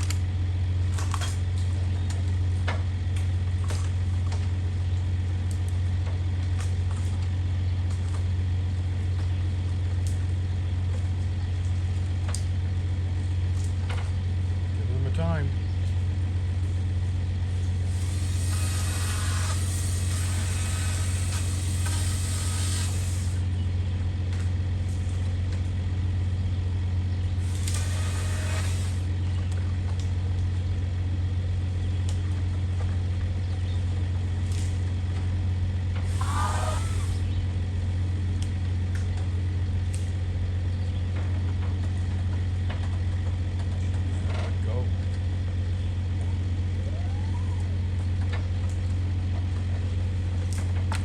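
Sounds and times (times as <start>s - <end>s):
motor droning: 0.0s - 37.9s
rushing hiss: 17.9s - 23.4s, 27.4s - 29.1s, 36.0s - 37.2s.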